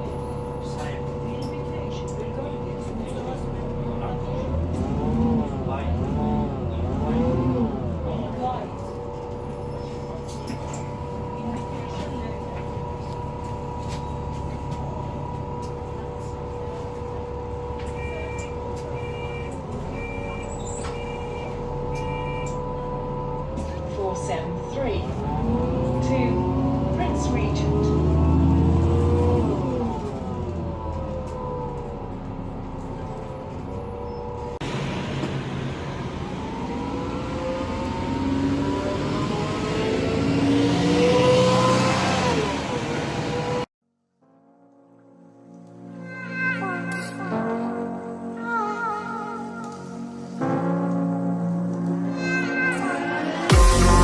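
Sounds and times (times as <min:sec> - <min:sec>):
bus diesel engine running: 0:00.0 - 0:43.7
high-pitched whine: 0:53.5 - 0:54.0.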